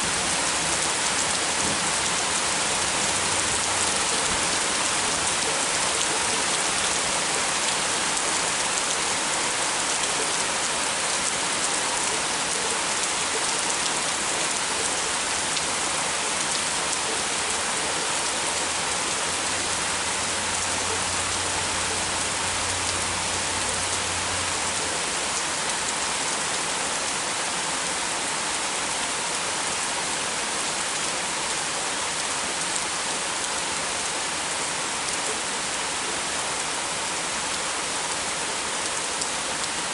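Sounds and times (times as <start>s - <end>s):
heavy rain pattering: 0.0s - 39.9s.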